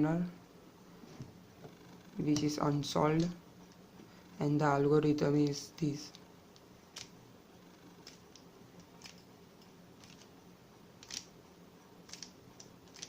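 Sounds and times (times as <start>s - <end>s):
plastic puzzle cube clicking: 10.0s - 10.3s, 11.0s - 11.3s, 12.1s - 13.0s.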